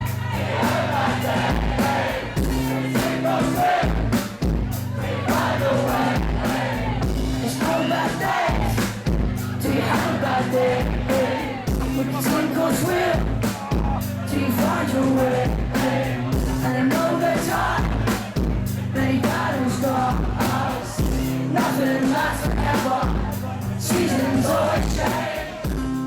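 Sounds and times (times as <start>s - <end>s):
rock song: 0.0s - 26.0s.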